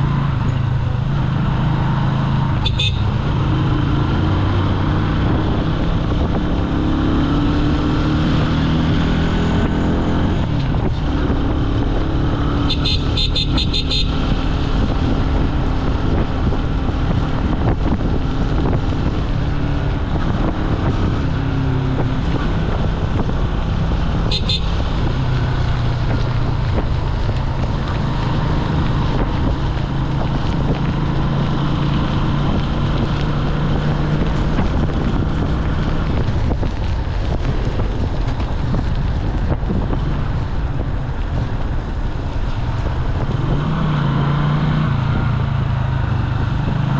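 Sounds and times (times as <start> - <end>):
wind noise on microphone: 0.0 - 46.9
motorcycle engine running: 9.5 - 43.6.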